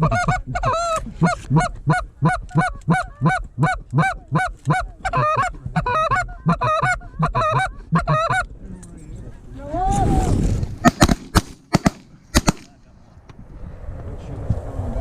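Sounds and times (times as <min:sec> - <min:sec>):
geese honking: 0:00.0 - 0:08.5.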